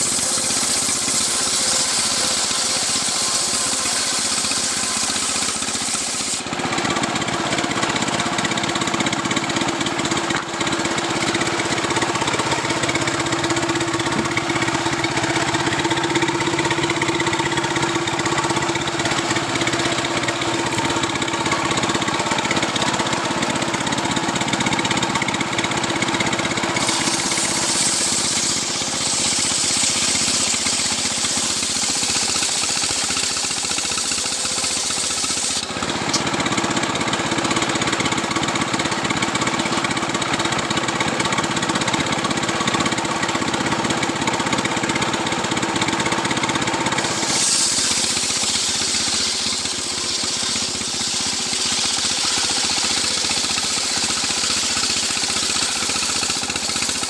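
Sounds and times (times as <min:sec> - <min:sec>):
chainsaw sawing wood: 0:00.0 - 0:57.0
bright hiss: 0:26.8 - 0:32.6, 0:47.0 - 0:54.8.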